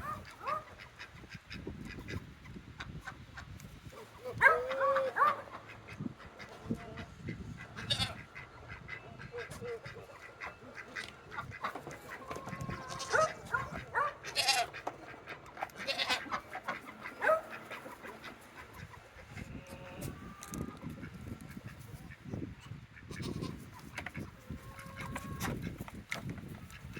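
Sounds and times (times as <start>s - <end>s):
wind rumbling on microphone: 0.0s - 4.7s, 5.8s - 10.0s, 12.3s - 14.2s, 18.7s - 26.9s
goats bleating: 7.8s - 8.2s, 12.4s - 13.4s, 14.2s - 14.8s, 15.8s - 16.4s.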